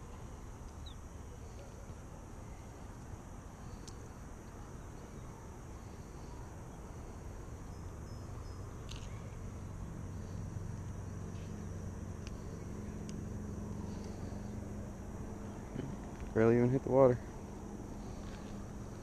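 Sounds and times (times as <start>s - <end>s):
low hum: 0.0s - 19.0s
steady low rumble: 0.0s - 19.0s
light ticks: 13.0s - 14.2s.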